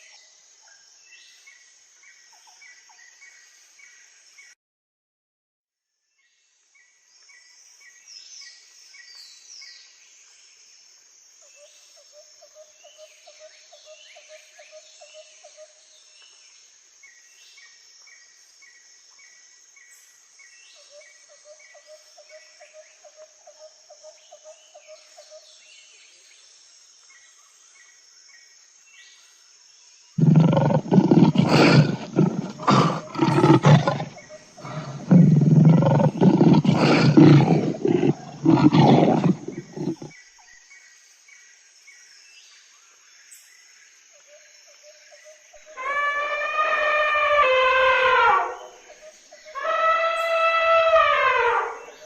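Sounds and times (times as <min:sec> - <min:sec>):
faint insects: 0:00.0 - 0:04.6, 0:05.8 - 0:52.0
big cat roaring: 0:30.2 - 0:40.1.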